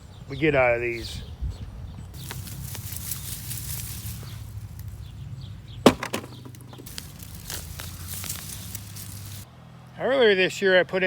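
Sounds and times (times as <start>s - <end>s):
faint rustles and clicks: 2.2s - 5.1s, 6.0s - 9.4s
sharp knocks: 5.8s - 7.0s.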